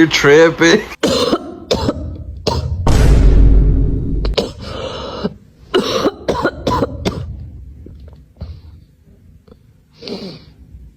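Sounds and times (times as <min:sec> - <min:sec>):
person coughing: 0:01.0 - 0:02.8, 0:04.3 - 0:07.4.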